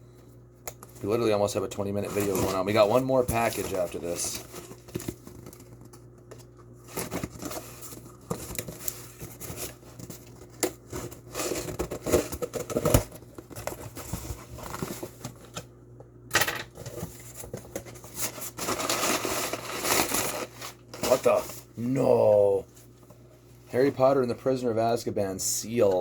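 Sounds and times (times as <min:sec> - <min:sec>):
package tape tearing and crinkling: 0:18.5 - 0:21.2.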